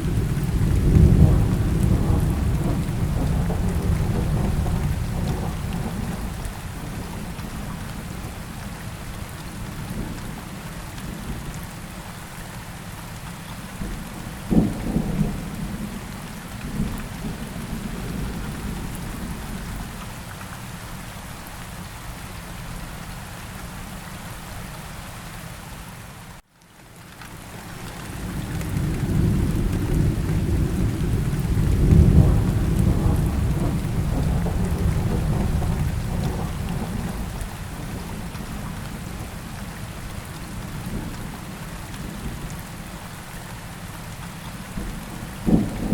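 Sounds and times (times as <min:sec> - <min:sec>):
low thunder rumble: 0:00.0 - 0:08.6, 0:13.8 - 0:20.0, 0:28.1 - 0:42.5, 0:44.7 - 0:45.9
steady rain falling: 0:00.0 - 0:45.9
sharp thunder crack: 0:29.1 - 0:37.5.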